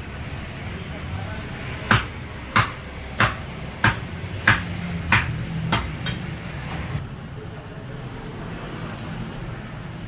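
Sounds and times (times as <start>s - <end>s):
cleaver chopping meat: 1.8s - 6.3s.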